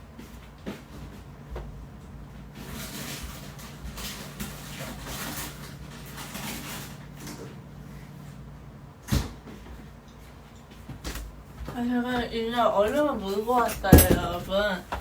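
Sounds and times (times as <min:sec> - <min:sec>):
steady low hum: 0:00.0 - 0:15.0
clattering and rustling: 0:02.5 - 0:07.7, 0:12.8 - 0:15.0.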